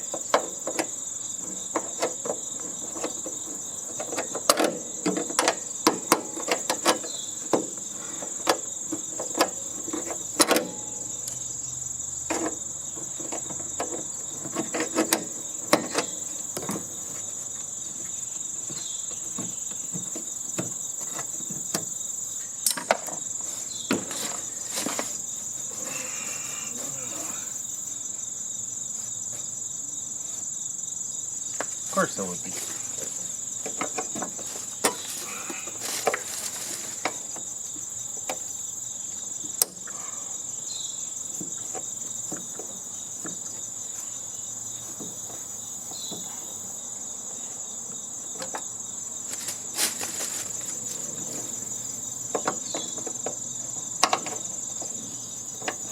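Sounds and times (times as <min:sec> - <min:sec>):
tools and metal parts knocking: 0:00.0 - 0:11.4, 0:12.2 - 0:17.2, 0:22.6 - 0:25.2, 0:32.6 - 0:37.5, 0:52.3 - 0:55.9
crickets chirring: 0:00.0 - 0:55.9.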